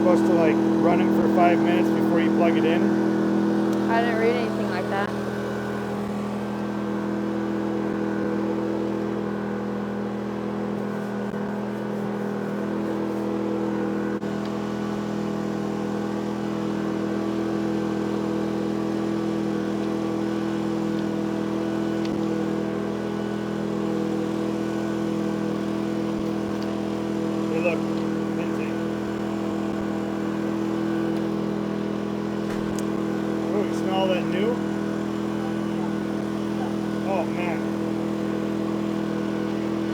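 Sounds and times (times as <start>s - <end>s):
generator engine humming: 0.0s - 39.9s.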